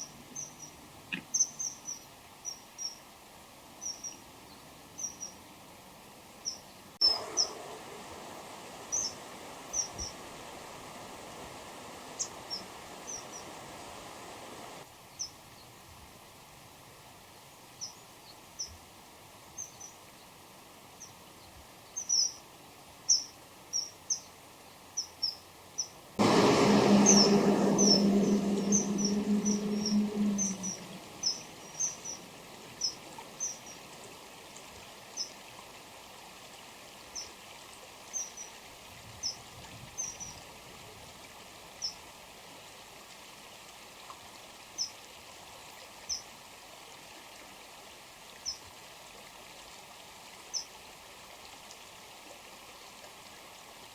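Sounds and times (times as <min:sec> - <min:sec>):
kingfishers calling: 0:06.4 - 0:10.6, 0:26.2 - 0:33.8
loud noise with low hum: 0:26.2 - 0:31.4.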